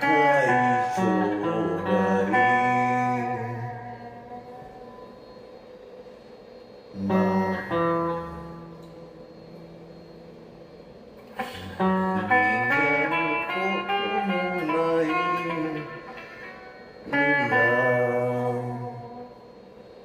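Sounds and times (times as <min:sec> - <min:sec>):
guitar chord ringing: 0:00.0 - 0:05.8, 0:06.9 - 0:20.0
plucked guitar notes bending: 0:11.3 - 0:18.0.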